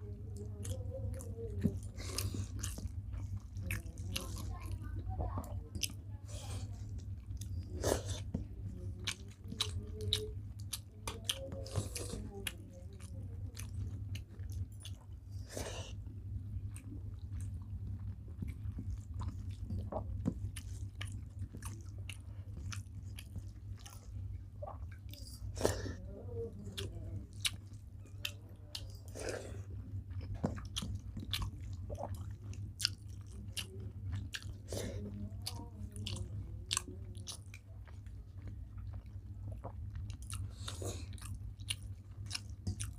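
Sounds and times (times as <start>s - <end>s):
low hum: 0.0s - 42.9s
wet chewing and lip smacks: 0.4s - 4.8s, 16.6s - 25.5s, 26.6s - 42.9s.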